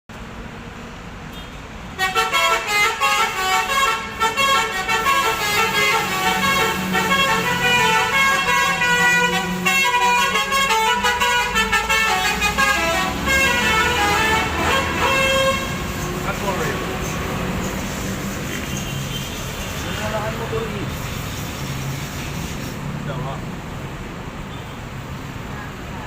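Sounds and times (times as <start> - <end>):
bus horn playing fast tune: 1.9 - 16.1.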